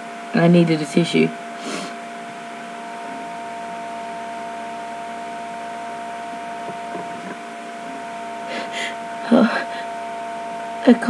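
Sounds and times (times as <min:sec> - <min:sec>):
steady hum: 0:00.0 - 0:11.0
hiss: 0:01.6 - 0:02.0.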